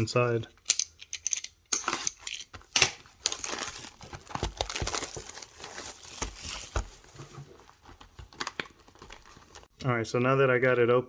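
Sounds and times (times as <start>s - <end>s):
wrapping and cardboard crinkling: 1.8s - 9.7s.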